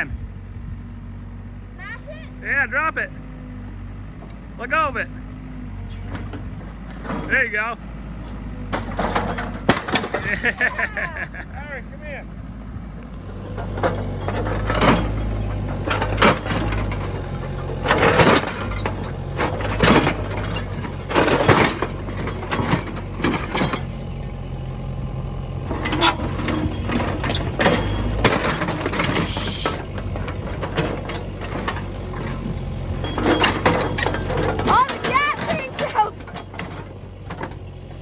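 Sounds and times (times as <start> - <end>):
excavator engine running: 0.0 - 38.0
metal and plastic crunching: 8.7 - 11.2, 13.1 - 38.0.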